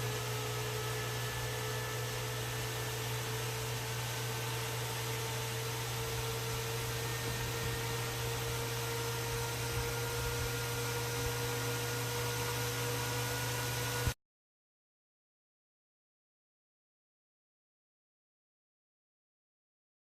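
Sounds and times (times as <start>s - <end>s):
low electrical hum: 0.0s - 14.2s.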